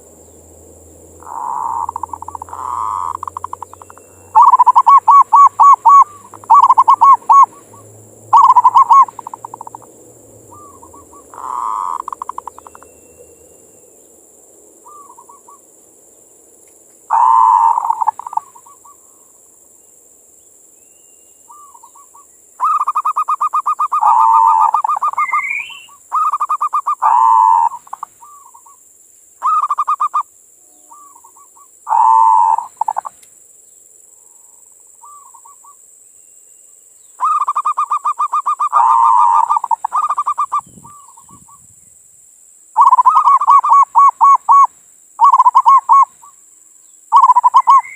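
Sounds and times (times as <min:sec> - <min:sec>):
dove cooing: 0:01.2 - 0:12.9, 0:14.8 - 0:15.6, 0:17.1 - 0:19.1, 0:21.5 - 0:28.8, 0:29.4 - 0:30.2, 0:30.8 - 0:33.1, 0:37.2 - 0:41.6, 0:42.8 - 0:46.3, 0:47.1 - 0:47.9.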